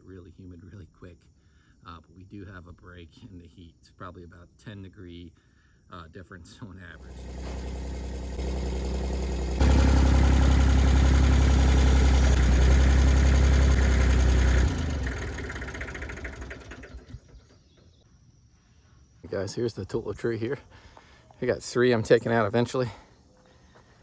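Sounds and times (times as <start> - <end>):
engine running: 7.0 - 17.6.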